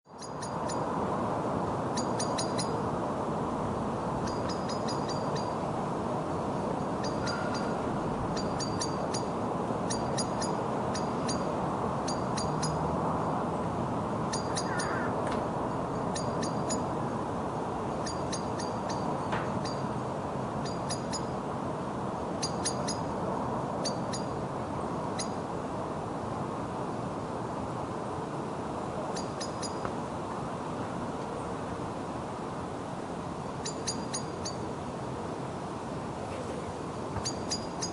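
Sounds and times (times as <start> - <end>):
blackbird alarm calls: 0.2 - 0.9, 2.0 - 2.8, 4.2 - 5.6, 7.0 - 9.3, 9.9 - 11.5, 12.1 - 12.8, 14.3 - 15.2, 16.0 - 16.9, 18.0 - 19.9, 22.4 - 23.1, 29.2 - 29.9, 33.6 - 34.6, 37.2 - 37.9.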